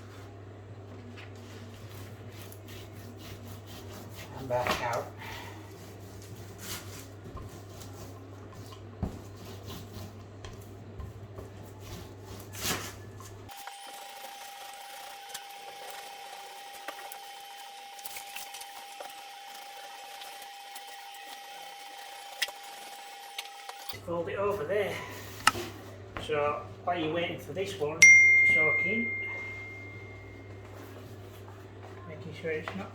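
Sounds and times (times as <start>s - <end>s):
paste brush swishing on wallpaper: 1.4s - 13.1s.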